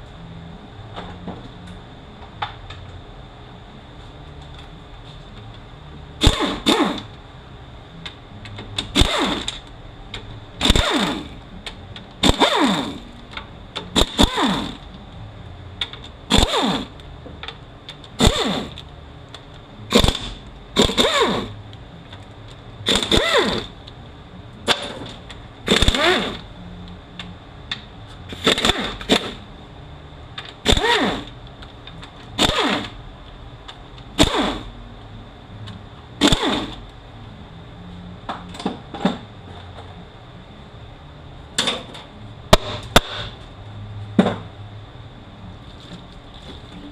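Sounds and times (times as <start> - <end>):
power tool motor bursts: 6.2 - 7.1, 8.9 - 9.6, 10.6 - 11.3, 12.2 - 13.1, 14.0 - 14.8, 16.3 - 16.9, 18.2 - 18.8, 19.9 - 21.5, 22.8 - 23.7, 25.7 - 26.4, 28.3 - 29.4, 30.6 - 31.3, 32.4 - 33.0, 34.2 - 34.7, 36.2 - 36.8.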